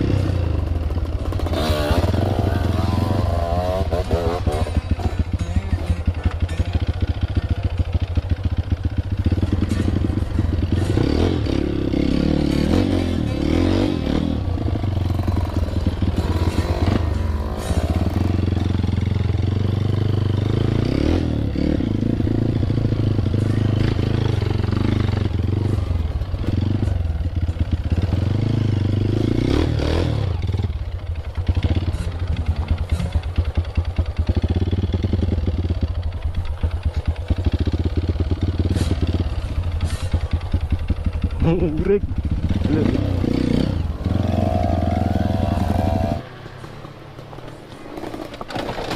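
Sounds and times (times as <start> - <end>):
dirt bike engine running: 0.0 - 48.9
bike clattering over rough ground: 45.0 - 48.9.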